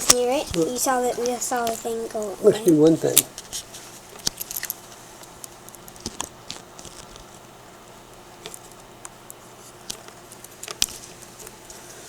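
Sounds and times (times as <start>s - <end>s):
small parts clicking: 2.6s - 7.4s, 8.4s - 11.6s.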